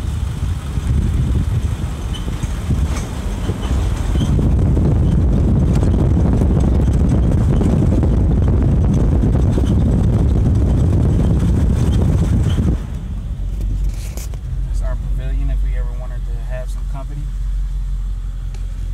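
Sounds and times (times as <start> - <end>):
truck engine and tyres rumbling: 0.0 - 18.9.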